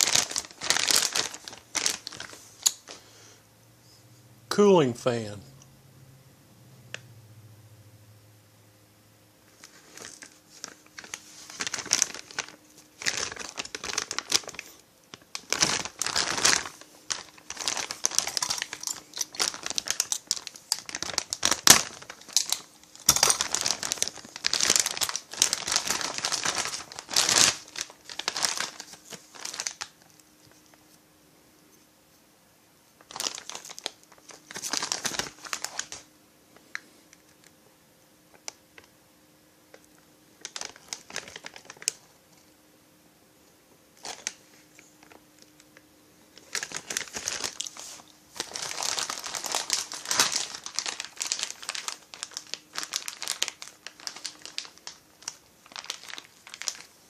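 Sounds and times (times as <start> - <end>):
packaging crinkling and tearing: 0.0 - 3.0, 9.5 - 30.7, 33.0 - 36.1, 39.8 - 42.1, 44.0 - 45.6, 46.3 - 57.0.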